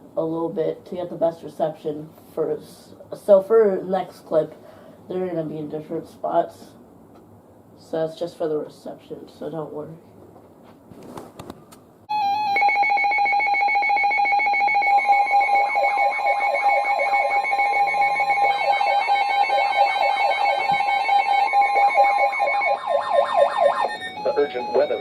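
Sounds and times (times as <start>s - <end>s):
steady electronic tone: 12.1s - 25.0s
falling electronic sweeps: 12.2s - 25.0s
rapid electronic beeping: 13.7s - 25.0s.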